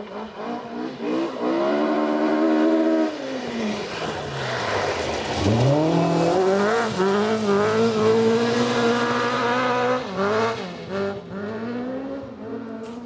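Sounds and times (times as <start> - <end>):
car engine revving hard: 5.3 - 13.0.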